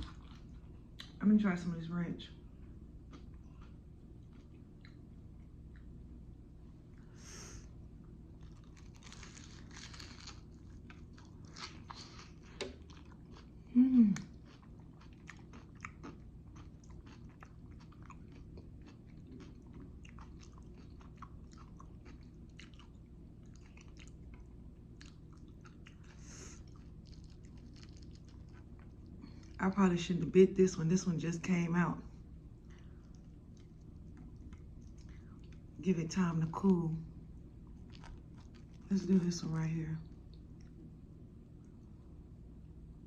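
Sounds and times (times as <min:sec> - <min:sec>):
chewing and crunching: 0:00.0 - 0:01.2, 0:03.1 - 0:05.9, 0:08.3 - 0:29.6, 0:32.6 - 0:35.8, 0:37.4 - 0:39.1.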